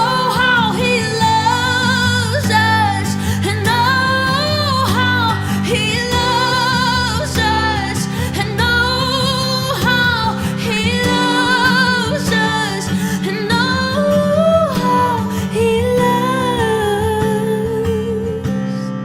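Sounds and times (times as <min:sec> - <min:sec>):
acoustic guitar chords: 0:00.0 - 0:19.0
person singing with vibrato: 0:00.0 - 0:19.0.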